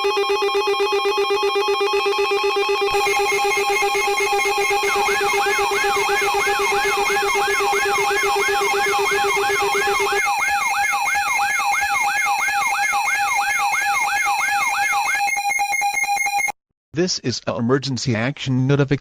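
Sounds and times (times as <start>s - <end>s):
synthesized siren sweeps: 0.0s - 16.5s
steady electronic tones: 2.9s - 16.5s.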